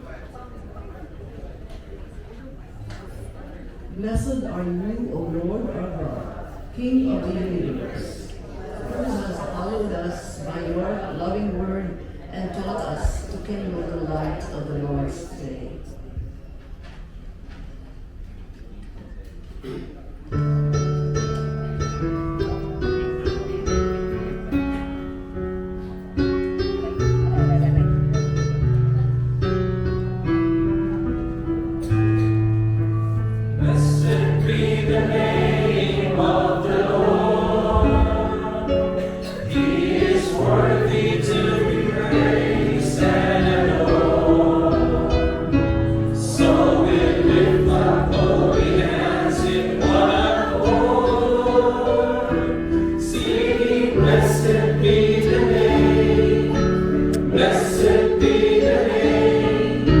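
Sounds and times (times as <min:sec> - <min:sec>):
choir singing worship song: 0:33.6 - 1:00.0.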